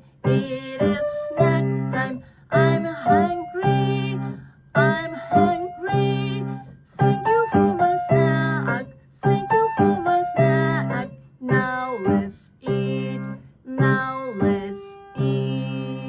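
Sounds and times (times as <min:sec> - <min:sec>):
piano playing children's song: 0:00.0 - 0:16.0.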